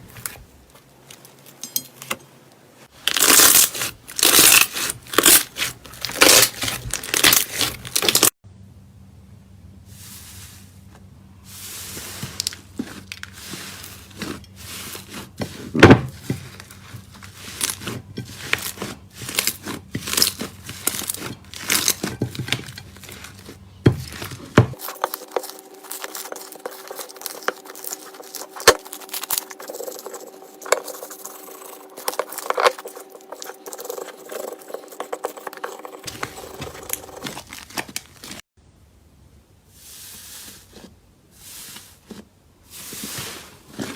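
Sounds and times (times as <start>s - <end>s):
background hum: 0.0s - 43.8s.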